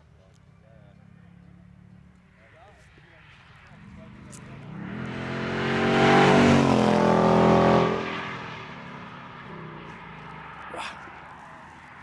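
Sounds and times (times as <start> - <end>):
car engine accelerating past: 3.8 - 10.7.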